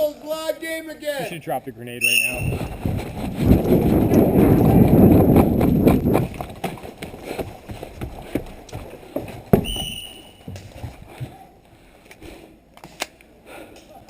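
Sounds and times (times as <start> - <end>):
referee whistle blast: 2.0 - 2.6, 9.6 - 10.4
crowd trampling footsteps: 2.0 - 14.0.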